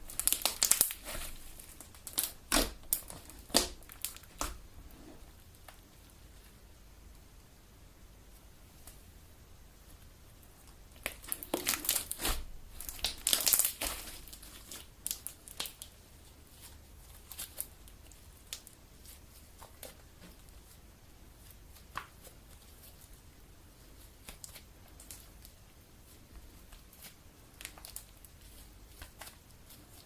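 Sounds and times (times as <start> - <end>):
slime popping and crackling: 0.0 - 4.6, 10.9 - 16.0.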